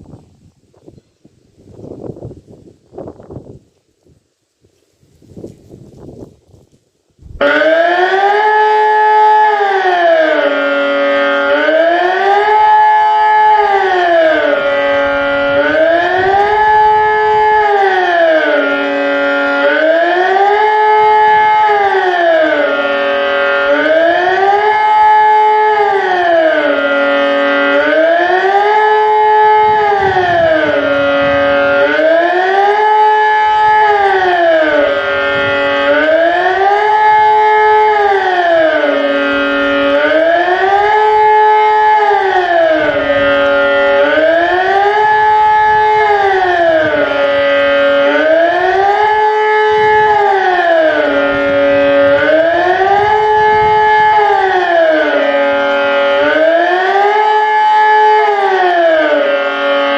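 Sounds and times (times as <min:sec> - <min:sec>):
civil defence siren wailing: 0:00.0 - 0:59.9.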